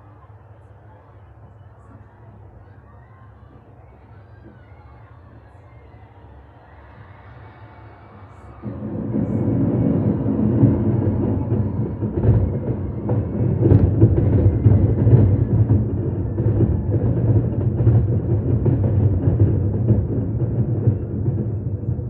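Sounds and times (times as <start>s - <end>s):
rumble of firework booms: 8.6s - 22.0s
sharp firework bangs: 8.6s - 22.0s.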